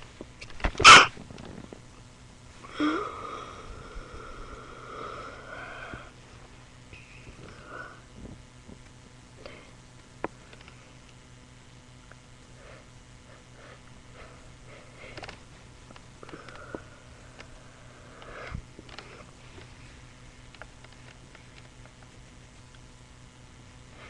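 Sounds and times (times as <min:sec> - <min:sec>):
wheezy breathing: 0:02.6 - 0:06.2, 0:12.5 - 0:15.4, 0:16.2 - 0:19.4.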